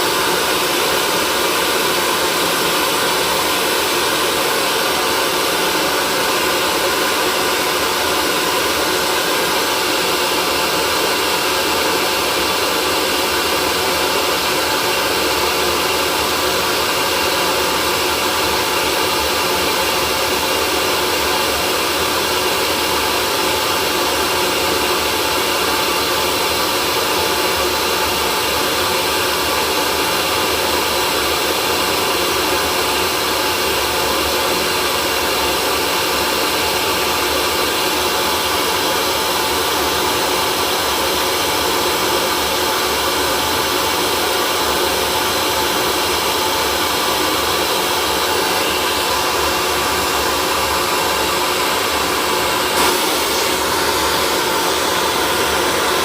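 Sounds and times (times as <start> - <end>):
hair dryer running: 0.0 - 56.0.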